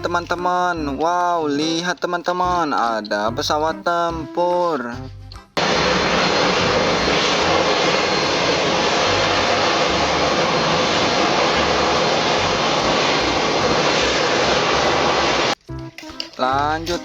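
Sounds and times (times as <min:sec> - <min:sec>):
faint high whine: 0:05.6 - 0:15.6
jet engine rushing: 0:05.6 - 0:15.6.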